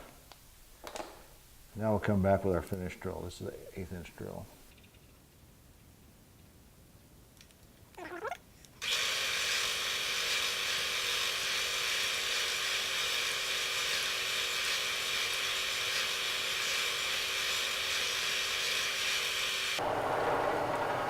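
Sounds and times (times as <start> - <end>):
milling machine hissing and humming: 8.8 - 21.0.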